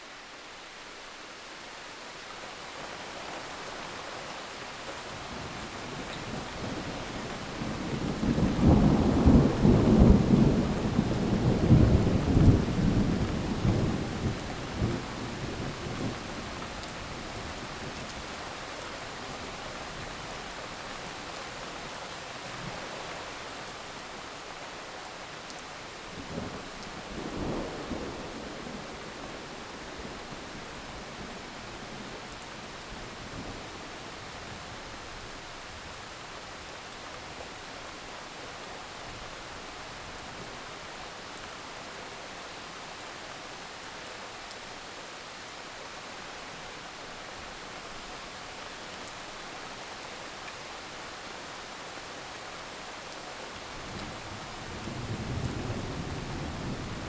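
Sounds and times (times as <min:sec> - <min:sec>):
steady rain: 0:00.0 - 0:57.0
low thunder rumbling: 0:07.5 - 0:16.2.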